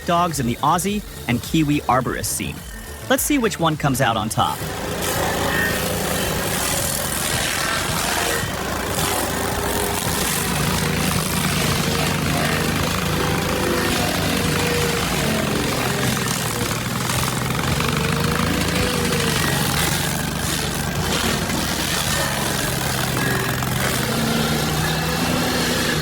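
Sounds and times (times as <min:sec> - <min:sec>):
background music: 0:00.0 - 0:26.0
cutting wheel grinding wood: 0:00.0 - 0:26.0
stump grinder engine running: 0:00.0 - 0:26.0.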